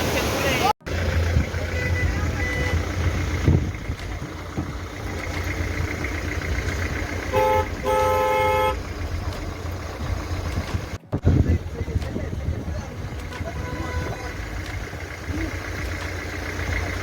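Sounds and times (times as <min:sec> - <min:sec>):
vehicle rumbling on road: 0:00.0 - 0:17.0
car horn honking: 0:01.4 - 0:03.2, 0:07.2 - 0:09.1, 0:13.2 - 0:14.6
wind noise: 0:10.0 - 0:14.2.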